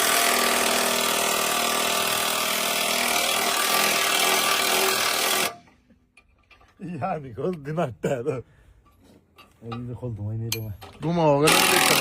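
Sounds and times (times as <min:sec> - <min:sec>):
handheld power tool running: 0:00.0 - 0:05.7, 0:11.5 - 0:12.0.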